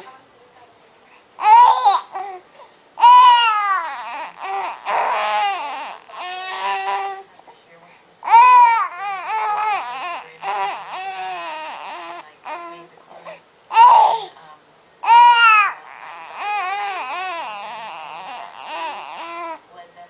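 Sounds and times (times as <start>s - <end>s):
baby crying and babbling: 1.4s - 2.4s, 3.0s - 7.3s, 8.2s - 12.9s, 13.7s - 14.4s, 15.0s - 19.6s
baby squealing: 3.0s - 7.2s, 8.3s - 12.7s, 15.0s - 19.6s.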